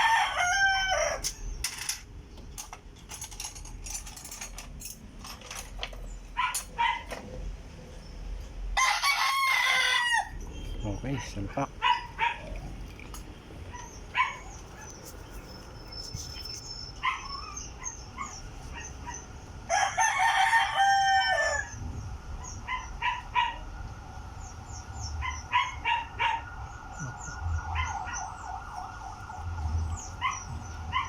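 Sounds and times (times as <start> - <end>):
rooster crowing: 0.0 - 1.3, 8.8 - 10.4, 19.7 - 21.8.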